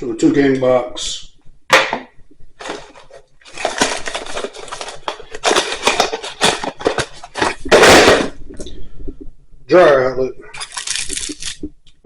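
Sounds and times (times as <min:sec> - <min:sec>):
rustling: 0:02.6 - 0:09.2.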